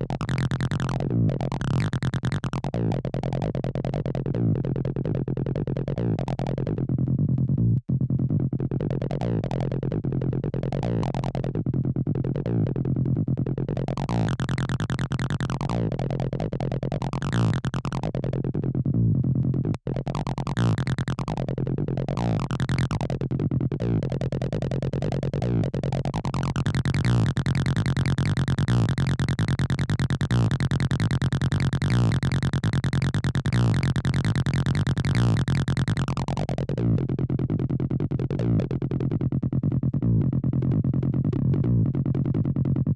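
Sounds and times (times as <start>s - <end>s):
electronic synthesizer music: 26.1s - 36.4s.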